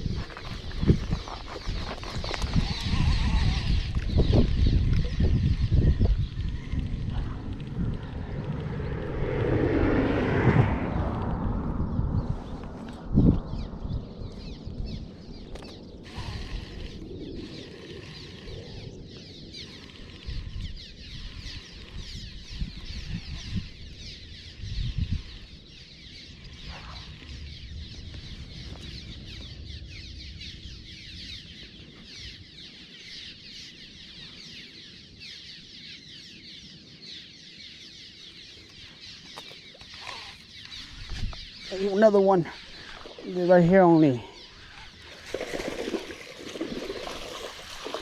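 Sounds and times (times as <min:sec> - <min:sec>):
small birds chirping: 0:00.0 - 0:09.6, 0:11.8 - 0:48.0
low rumbles and bumps: 0:00.0 - 0:15.8.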